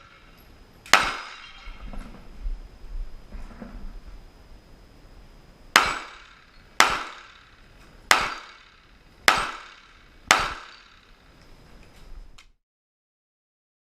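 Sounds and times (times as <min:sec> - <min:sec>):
pistol shots: 0:00.9 - 0:01.8, 0:05.7 - 0:11.1.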